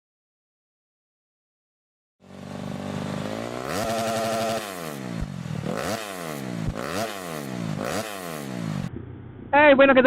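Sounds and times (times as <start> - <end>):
motorcycle engine revving: 2.2 - 9.6.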